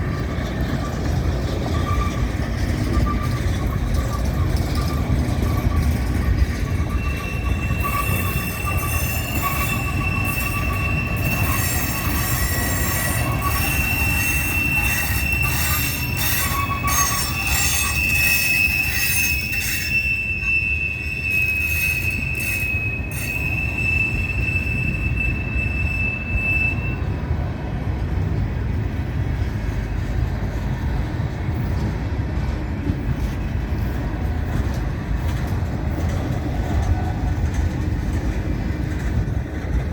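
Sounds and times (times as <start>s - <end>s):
high wheel squeal: 0.0s - 27.4s
freight train cars rumbling: 0.0s - 39.9s.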